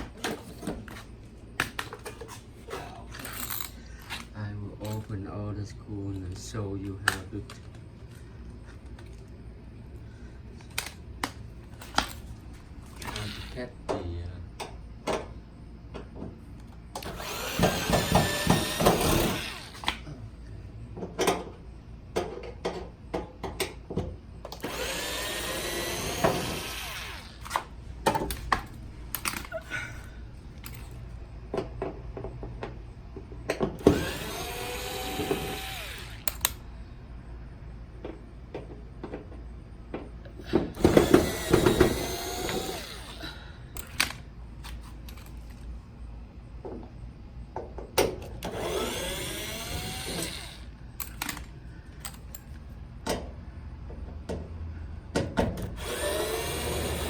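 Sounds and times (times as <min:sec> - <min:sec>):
power driver motor whine: 0:12.9 - 0:13.7, 0:16.9 - 0:20.0, 0:24.5 - 0:27.8, 0:33.8 - 0:36.6, 0:40.5 - 0:44.2, 0:48.3 - 0:51.5, 0:55.7 - 0:57.0.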